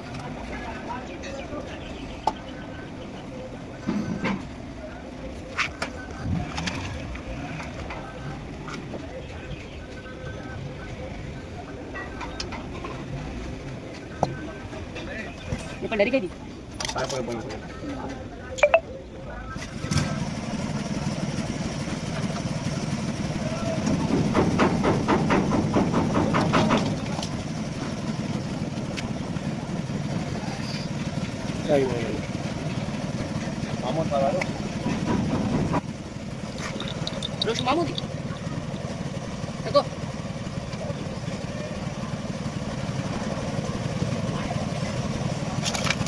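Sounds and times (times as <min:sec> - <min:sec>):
engine idling: 0:19.5 - 0:46.0
rapid sharp knocks: 0:24.1 - 0:27.0.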